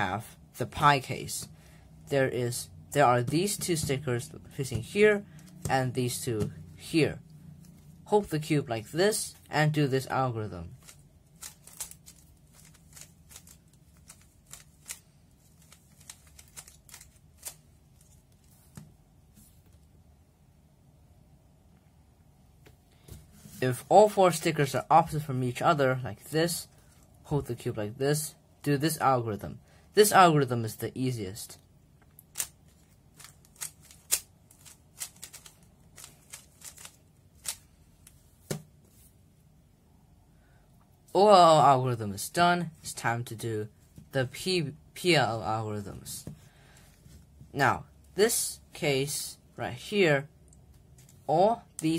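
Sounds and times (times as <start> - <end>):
puzzle cube plastic clicks: 10.8 - 18.1, 32.1 - 37.6.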